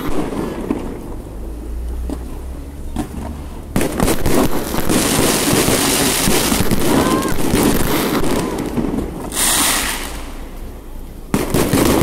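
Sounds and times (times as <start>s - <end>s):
fireworks bursting and crackling: 0.0s - 12.0s
distant firework bangs: 2.9s - 10.4s, 11.3s - 12.0s.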